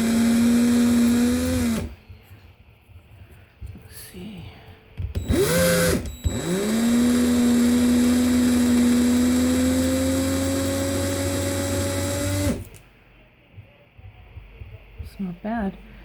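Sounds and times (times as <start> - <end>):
drill spinning: 0.0 - 2.0, 5.2 - 12.8.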